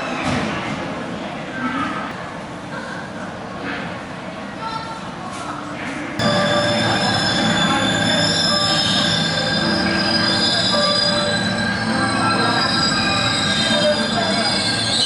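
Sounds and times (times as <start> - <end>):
train rumble: 6.2 - 15.0
train wheels squealing: 6.2 - 15.0.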